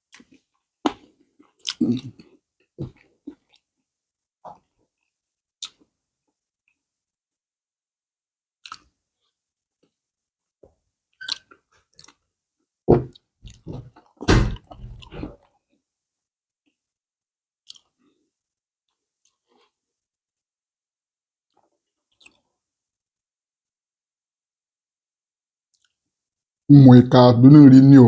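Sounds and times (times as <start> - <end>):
person chewing food: 0.1 - 2.3, 14.6 - 15.4, 17.6 - 18.0
wet mouth clicks: 1.6 - 2.2, 8.6 - 8.8.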